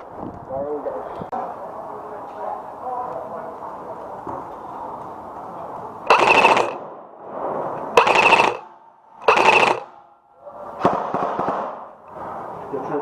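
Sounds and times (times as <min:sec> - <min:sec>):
airsoft rifle full-auto bursts: 0:06.1 - 0:06.8, 0:07.9 - 0:09.9.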